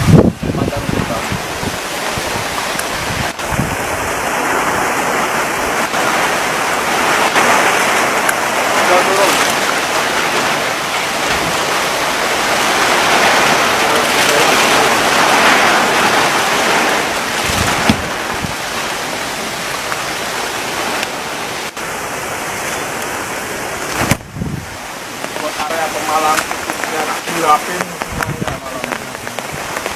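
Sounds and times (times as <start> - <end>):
heavy rain pouring: 0.0 - 29.9.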